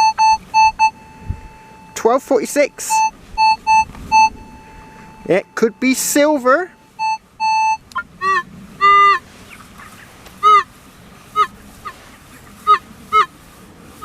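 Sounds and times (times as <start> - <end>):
metal detector beeps: 0.0 - 9.2
geese honking: 0.0 - 14.0.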